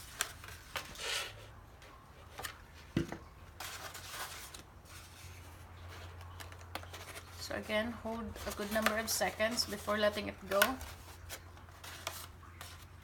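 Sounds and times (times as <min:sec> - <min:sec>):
stiff paper rustling: 0:03.5 - 0:13.0.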